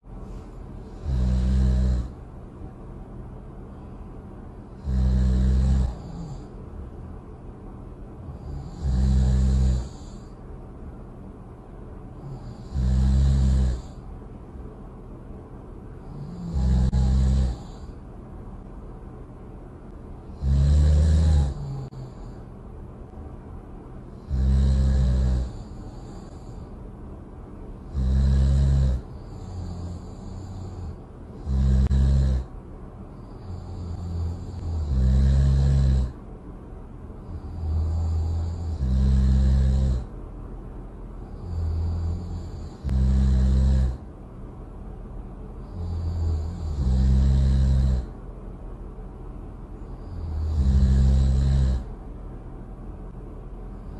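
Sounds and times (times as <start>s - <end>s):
soft hissing breath: 0.0s - 2.4s, 8.2s - 11.3s, 15.8s - 18.9s, 20.1s - 22.8s, 24.0s - 36.3s, 37.0s - 44.1s, 44.8s - 52.0s
loud snoring: 0.8s - 2.2s, 4.7s - 6.5s, 8.3s - 10.4s, 12.2s - 14.0s, 16.0s - 18.0s, 20.3s - 22.4s, 24.1s - 26.7s, 27.8s - 32.5s, 33.2s - 36.2s, 37.2s - 40.1s, 41.3s - 44.1s, 45.6s - 48.2s, 49.9s - 51.9s.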